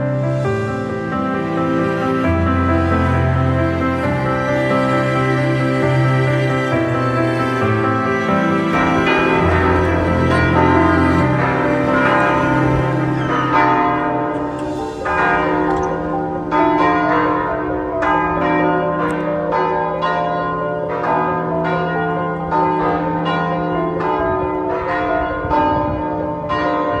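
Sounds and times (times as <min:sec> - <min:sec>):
held low note: 0:08.3 - 0:19.5
bell-like chimes: 0:08.7 - 0:25.8.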